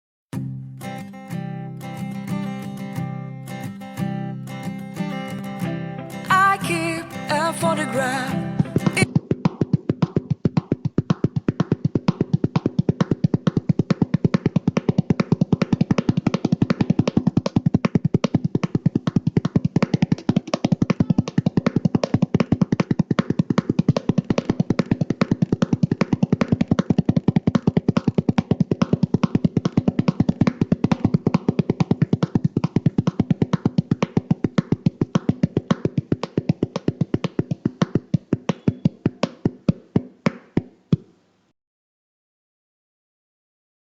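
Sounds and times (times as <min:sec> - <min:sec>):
drum struck like galloping hoofbeats: 0:08.6 - 0:41.1.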